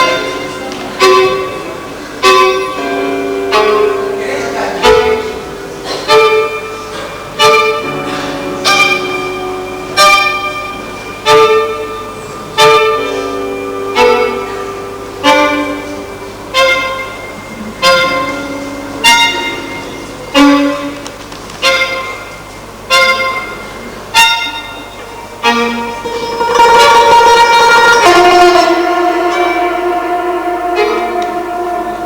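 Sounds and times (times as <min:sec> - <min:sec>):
violin held notes: 0:00.0 - 0:32.0
guitar chord strikes: 0:25.0 - 0:32.0.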